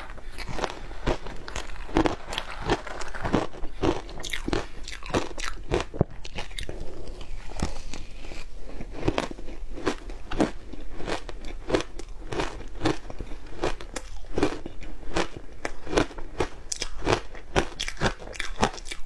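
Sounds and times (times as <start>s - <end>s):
ice being chewed: 0.0s - 19.0s.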